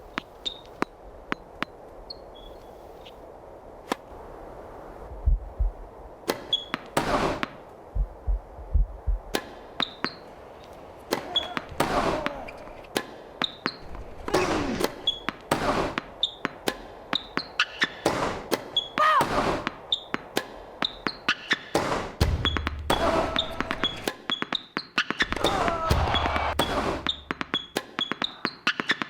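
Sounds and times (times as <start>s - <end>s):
shoes squeaking on court: 0.1s - 0.8s, 6.5s - 6.8s, 9.8s - 11.8s, 12.4s - 16.5s, 17.1s - 18.0s, 18.8s - 19.0s, 23.8s - 25.3s, 26.2s - 29.0s
racket hitting tennis ball: 9.2s - 10.4s, 11.0s - 29.0s
ball bouncing: 23.6s - 29.0s.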